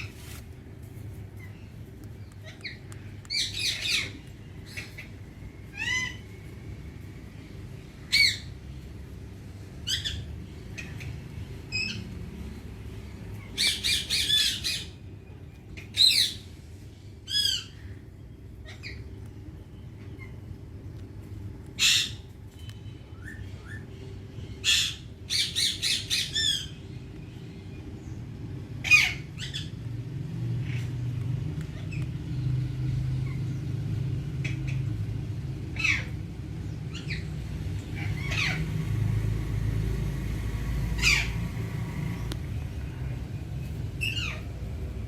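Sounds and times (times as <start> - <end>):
low steady rumble: 0.0 - 45.0
parakeet squawking: 21.8 - 22.2, 24.6 - 26.8, 28.8 - 29.8, 35.7 - 36.2, 36.9 - 38.8, 40.9 - 41.6, 44.0 - 44.6.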